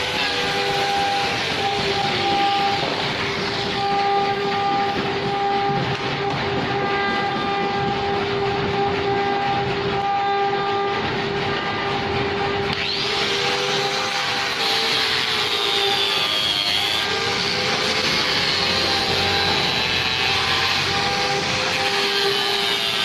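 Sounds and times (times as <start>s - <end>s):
sawmill saw whining: 0.0s - 23.0s
blade cutting into wood: 12.7s - 17.0s.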